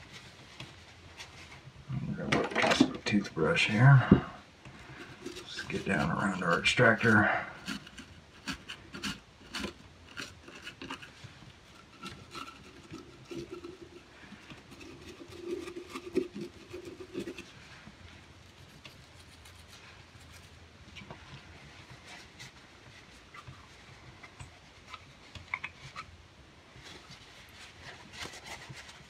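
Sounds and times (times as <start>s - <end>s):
toothbrush scrubbing metal: 4.8s - 17.6s.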